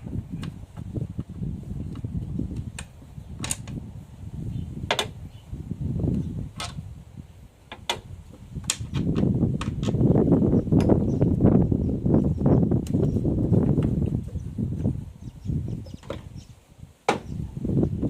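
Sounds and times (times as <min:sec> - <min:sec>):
low rumbling handling noise: 0:00.0 - 0:18.0
sharp clicks and knocks: 0:00.4 - 0:03.8, 0:04.9 - 0:05.2, 0:07.7 - 0:10.0, 0:15.9 - 0:16.3.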